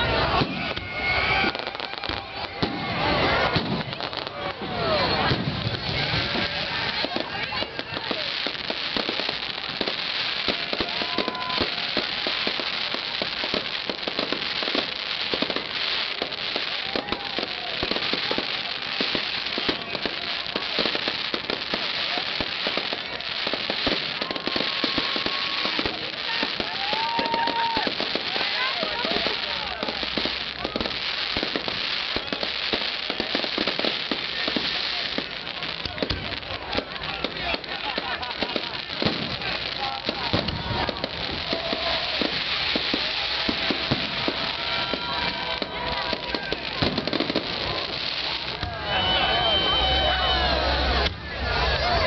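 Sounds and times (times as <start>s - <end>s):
fireworks crackling and popping: 0.0s - 52.0s
steady hiss: 5.4s - 49.0s
whistling tone: 48.8s - 50.6s.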